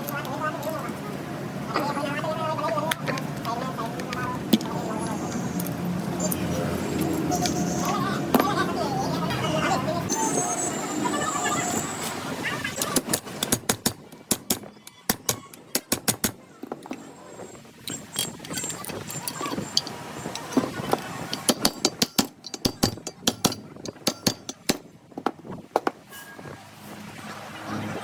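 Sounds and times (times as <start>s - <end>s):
hand tools tapping and knocking: 12.8s - 17.1s, 17.9s - 26.1s.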